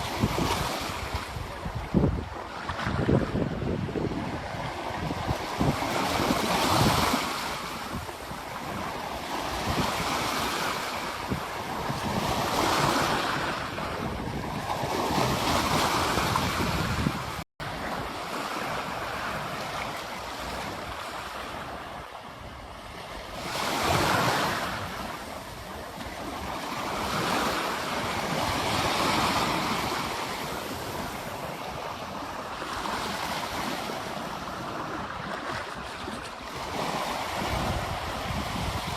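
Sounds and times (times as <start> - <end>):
ocean waves breaking on beach: 0.0 - 38.9.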